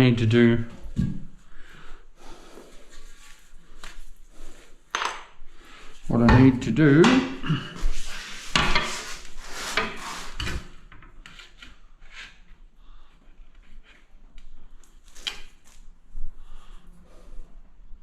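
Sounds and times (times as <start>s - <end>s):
wood rubbing and scraping: 6.3s - 14.4s.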